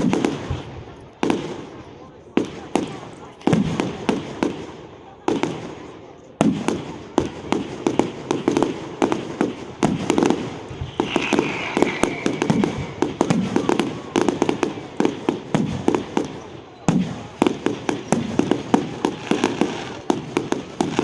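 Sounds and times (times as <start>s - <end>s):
fireworks bangs and crackling: 0.0s - 21.0s
high falling whistle: 10.8s - 13.3s.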